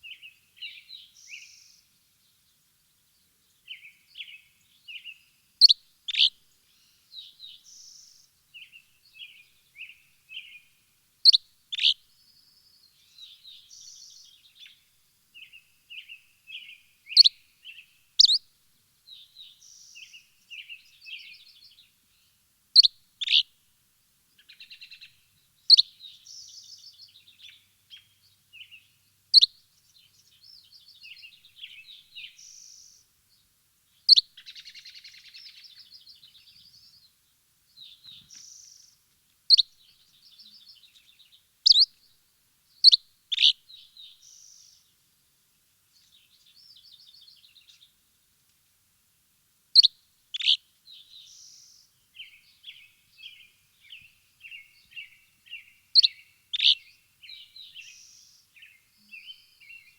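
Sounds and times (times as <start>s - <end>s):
soft rapid bird twittering: 18.2s - 18.4s, 39.5s - 42.0s, 42.8s - 44.9s, 49.8s - 59.9s.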